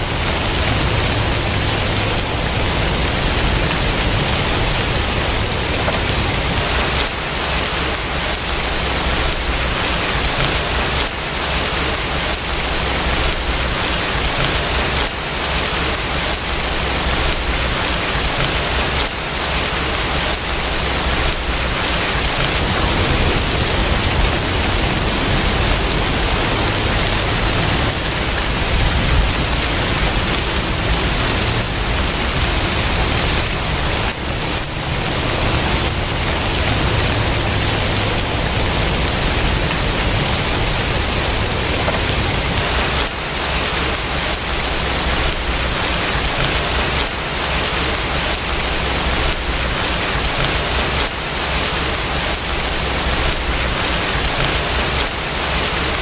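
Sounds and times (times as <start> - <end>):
steady rain hiss: 0.0 - 56.0
low rumble: 20.7 - 42.8.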